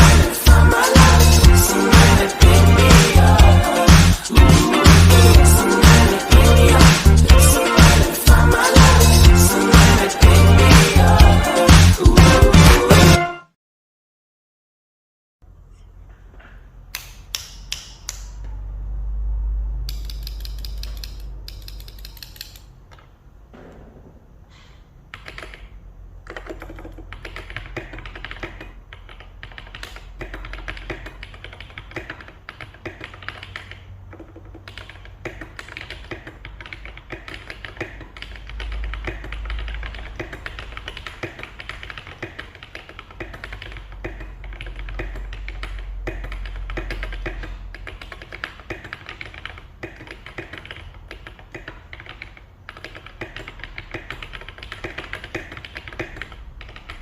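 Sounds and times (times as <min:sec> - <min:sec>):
mechanical keyboard typing: 0:19.9 - 0:23.1, 0:25.1 - 0:57.0.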